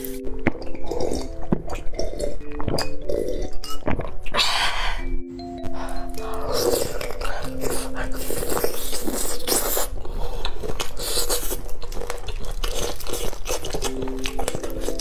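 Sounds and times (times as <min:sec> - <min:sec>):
food crunching: 0:00.0 - 0:15.0
wet squishy chewing: 0:00.0 - 0:15.0.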